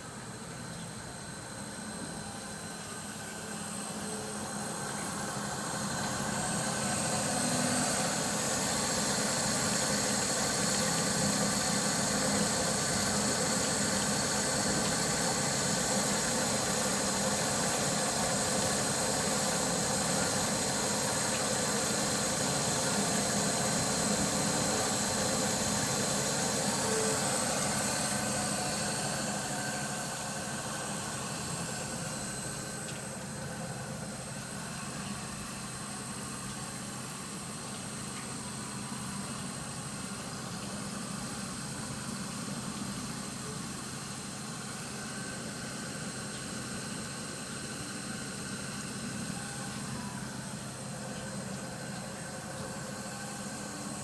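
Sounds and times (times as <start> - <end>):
machine hum: 0.0 - 46.8
high machine whine: 0.0 - 54.0.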